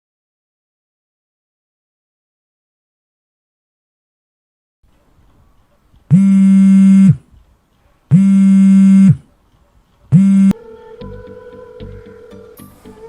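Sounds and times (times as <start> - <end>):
low electronic buzzer tones: 6.1 - 7.2, 8.1 - 9.2, 10.1 - 10.6
music: 10.6 - 13.0.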